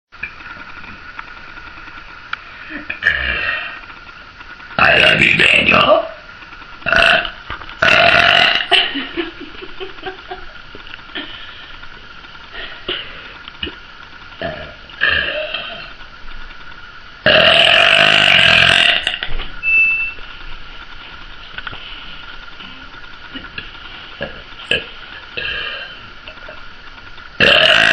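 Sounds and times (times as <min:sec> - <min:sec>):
woman burping: 0:06.9 - 0:08.8, 0:14.4 - 0:16.0, 0:17.3 - 0:19.2, 0:27.4 - 0:27.9.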